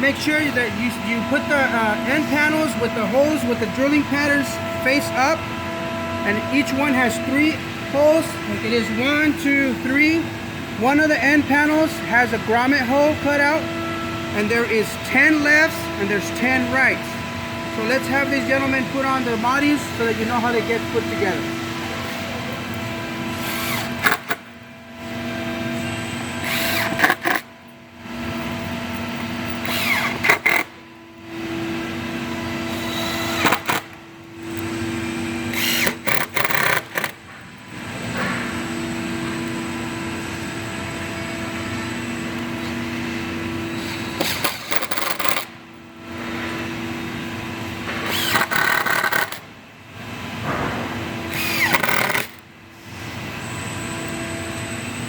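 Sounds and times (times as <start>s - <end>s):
power drill driving screws: 23.3s - 24.4s, 26.4s - 27.5s, 28.4s - 30.8s, 32.7s - 34.8s, 35.5s - 37.2s, 43.7s - 45.5s, 47.9s - 49.5s, 51.2s - 52.4s
drill clicks: 23.4s - 24.5s, 26.4s - 27.5s, 28.4s - 30.8s, 32.6s - 37.3s, 43.8s - 45.6s, 47.6s - 49.5s, 51.2s - 52.5s.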